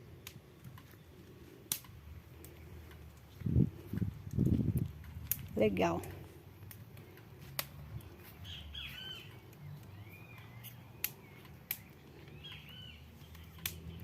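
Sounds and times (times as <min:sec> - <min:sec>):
sharp clicks: 0:01.7 - 0:03.0, 0:10.3 - 0:12.6, 0:13.3 - 0:13.9
birds chirping faintly: 0:05.6 - 0:14.0.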